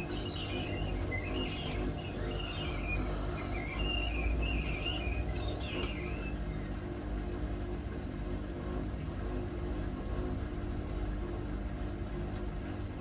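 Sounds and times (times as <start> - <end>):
high-pitched bearing squeaks: 0.0 - 6.4.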